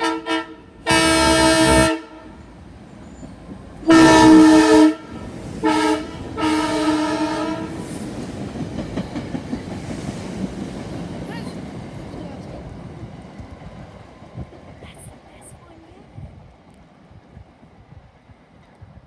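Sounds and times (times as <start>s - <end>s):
train horn blasts: 0.0s - 2.4s, 3.8s - 8.0s
train wheels rumbling on rails: 0.0s - 19.0s.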